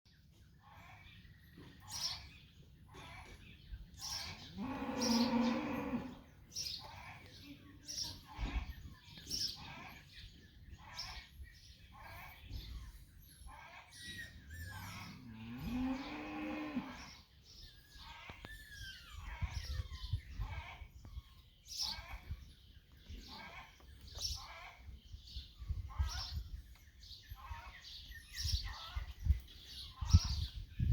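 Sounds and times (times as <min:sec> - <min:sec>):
small birds chirping: 0:00.1 - 0:30.9
cow mooing: 0:04.5 - 0:06.2, 0:15.1 - 0:17.1.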